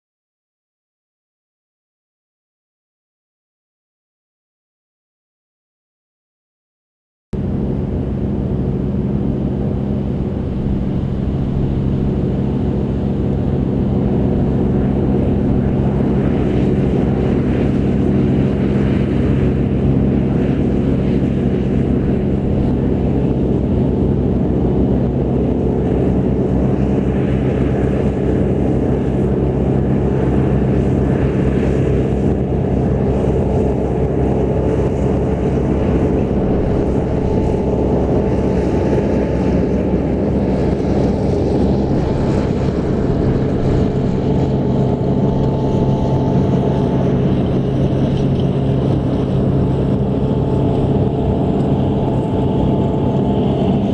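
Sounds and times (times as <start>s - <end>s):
tractor engine running: 32.0s - 53.9s.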